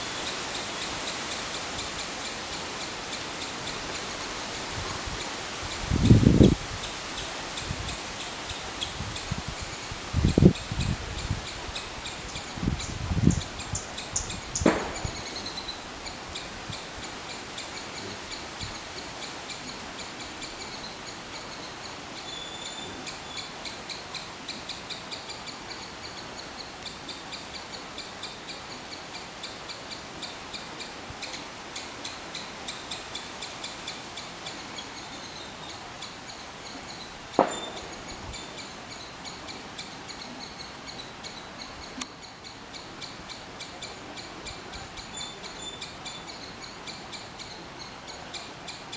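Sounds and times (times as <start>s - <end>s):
sharp knock: 14.6s - 15.2s.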